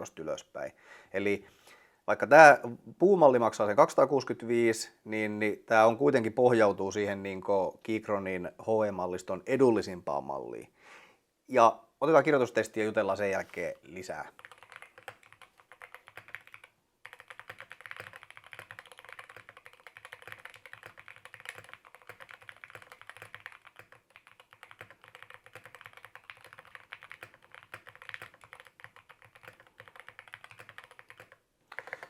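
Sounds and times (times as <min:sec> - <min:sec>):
fast typing on keyboard: 0:14.3 - 0:32.0.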